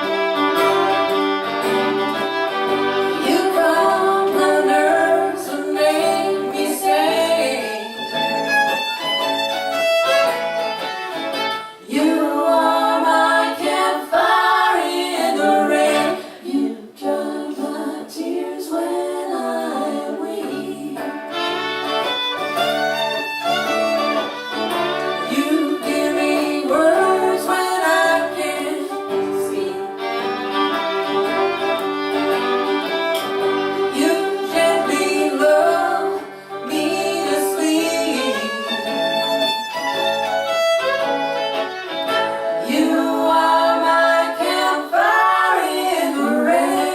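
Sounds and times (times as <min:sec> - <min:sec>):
acoustic folk band playing: 0:00.0 - 0:46.9
fiddle melody: 0:00.0 - 0:46.9.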